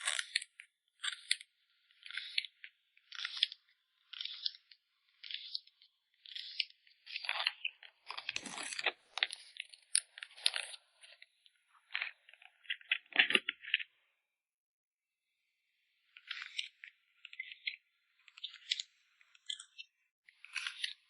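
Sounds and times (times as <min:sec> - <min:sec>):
packaging rustling and crackling: 0:08.2 - 0:09.4.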